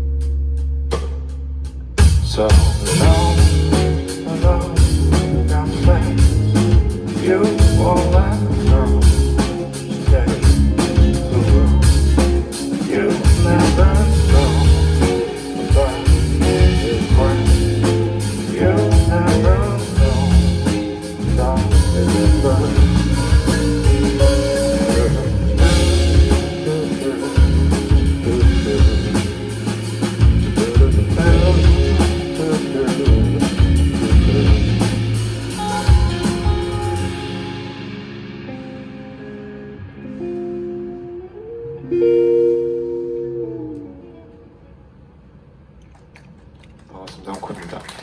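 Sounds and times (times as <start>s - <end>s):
heavy bass line: 0.0s - 41.4s
live band playing: 0.0s - 44.5s
steady drum beat: 0.9s - 39.2s.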